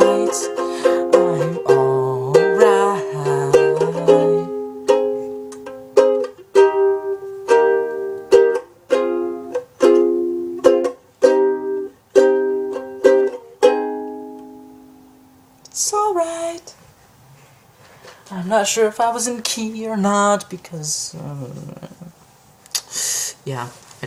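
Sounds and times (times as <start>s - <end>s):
ukulele strumming chords: 0.0s - 16.7s.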